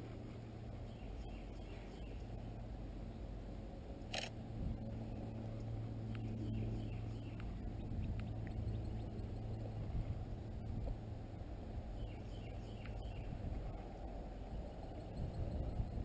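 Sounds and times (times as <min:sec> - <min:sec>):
steady low hum: 0:00.0 - 0:16.0
sharp click: 0:04.1 - 0:04.3.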